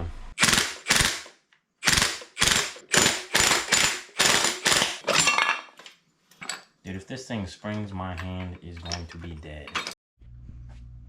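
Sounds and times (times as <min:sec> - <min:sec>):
ratchet wrench clicking: 0:01.8 - 0:05.0.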